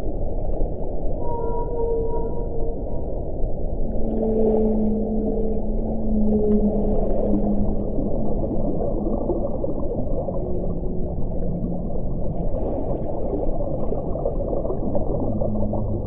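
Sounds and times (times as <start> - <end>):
low whale calls: 1.1 - 12.4
low rush of water: 3.7 - 16.0.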